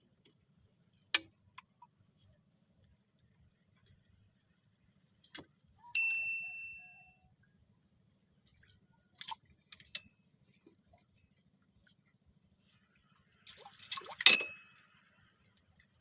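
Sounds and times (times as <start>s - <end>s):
bright metallic ding: 6.0s - 7.1s.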